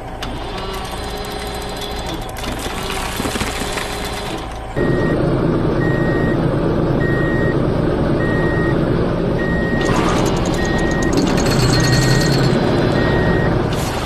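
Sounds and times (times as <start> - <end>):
heavy vehicle engine running: 0.0 - 14.0
reversing alarm beeping: 4.8 - 5.2, 5.8 - 6.4, 7.0 - 7.6, 8.2 - 8.8, 9.4 - 13.7.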